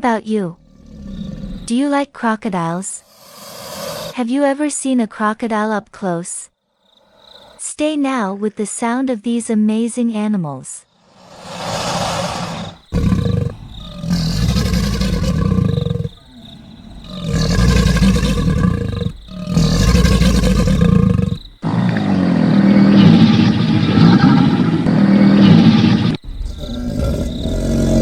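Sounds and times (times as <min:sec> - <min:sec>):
crocodiles growling and bellowing: 0:00.6 - 0:01.7, 0:11.1 - 0:28.0.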